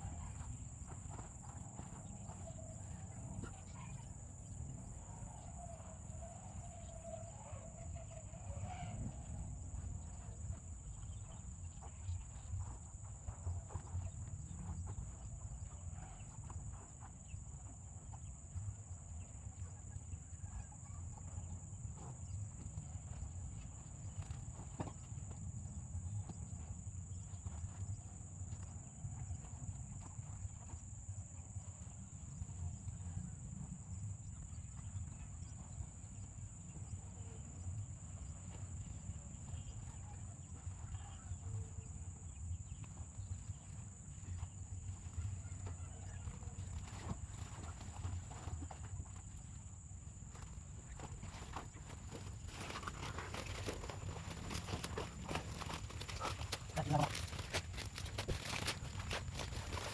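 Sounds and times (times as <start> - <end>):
high-pitched insect chorus: 50.3 - 59.9.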